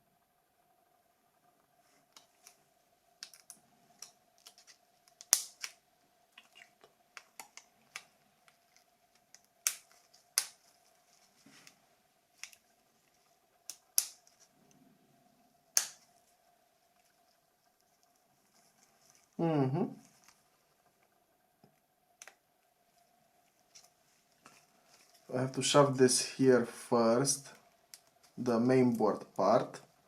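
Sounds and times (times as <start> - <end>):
plastic phone parts clicking: 3.2 - 5.8
plastic snaps: 3.2 - 5.8.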